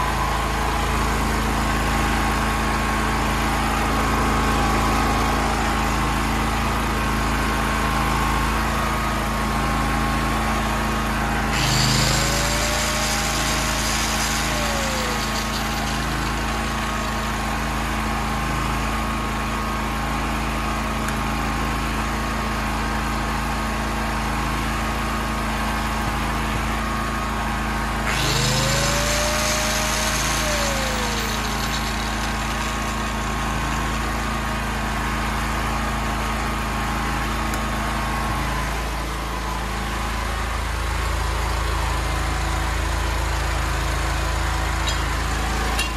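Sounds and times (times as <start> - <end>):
angle grinder whining: 0.0 - 18.9, 25.7 - 40.0
generator engine running: 0.0 - 45.9.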